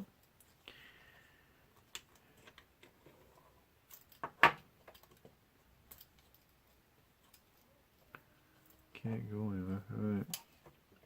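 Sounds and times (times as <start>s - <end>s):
small parts clicking and tapping: 0.1s - 8.9s.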